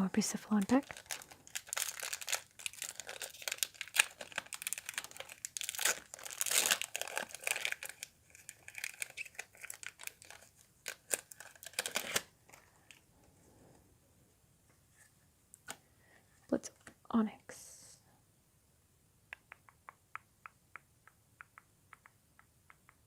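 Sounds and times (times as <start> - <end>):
foil wrapper tearing and crinkling: 0.6 - 12.3.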